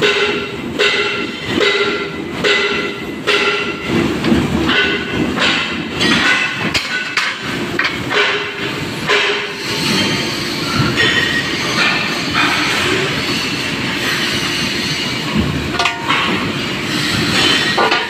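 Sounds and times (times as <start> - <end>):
steady machine rumble: 0.0 - 9.6, 13.7 - 18.0.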